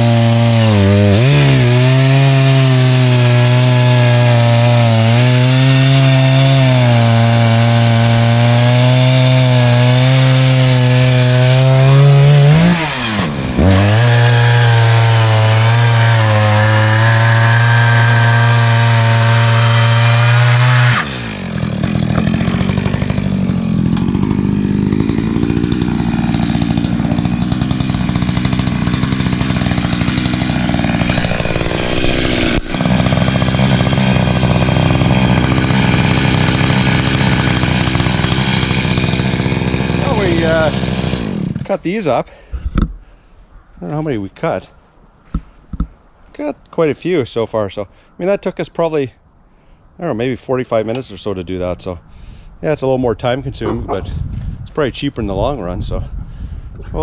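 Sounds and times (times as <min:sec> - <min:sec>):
chainsaw cutting wood: 0:00.0 - 0:41.9.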